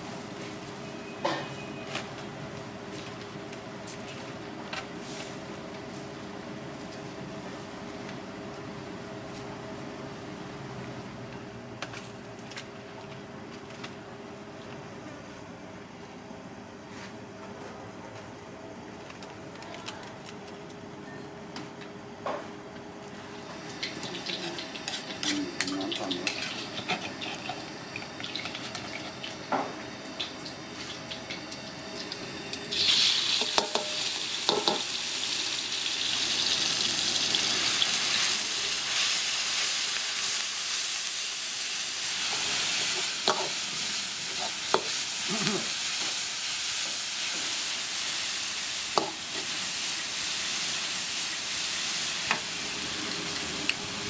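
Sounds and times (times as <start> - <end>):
food sizzling in hot oil: 23.3 - 54.0.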